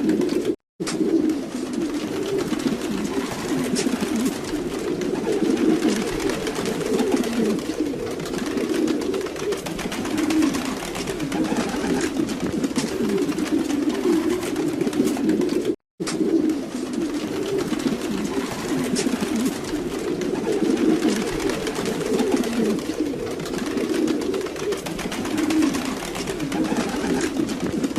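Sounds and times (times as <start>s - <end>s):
pigeons cooing: 0.0s - 27.9s.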